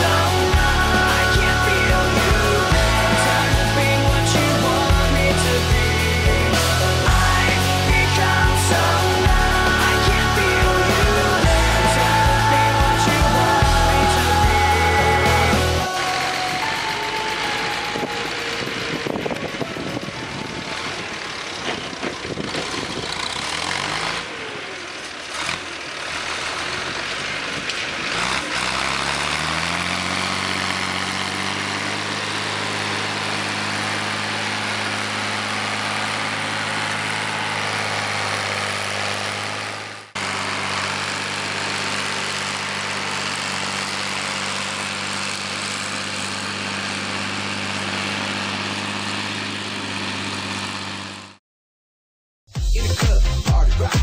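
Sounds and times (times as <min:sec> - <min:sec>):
tractor diesel engine running: 0:00.0 - 0:51.4.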